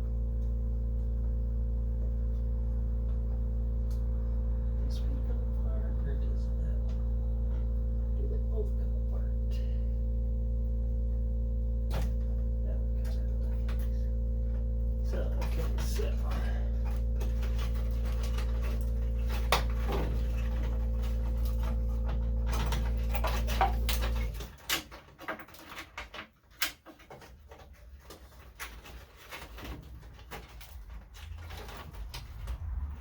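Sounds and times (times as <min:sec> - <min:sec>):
steady electrical hum: 0:00.0 - 0:33.0
small parts clicking and knocking: 0:15.0 - 0:33.0.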